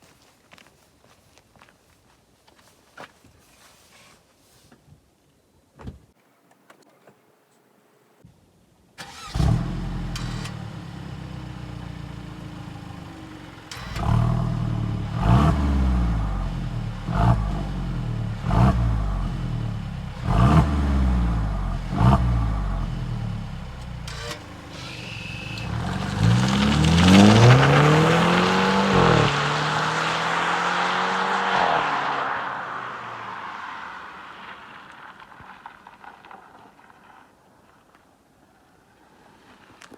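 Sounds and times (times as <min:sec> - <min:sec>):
car engine starting and revving: 0:09.0 - 0:35.4
exhaust pops and crackles: 0:10.1 - 0:29.5.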